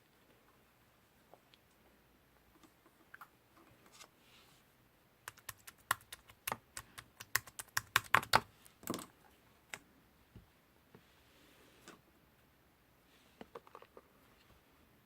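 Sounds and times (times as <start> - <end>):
sharp clicks and taps: 5.3 - 8.5.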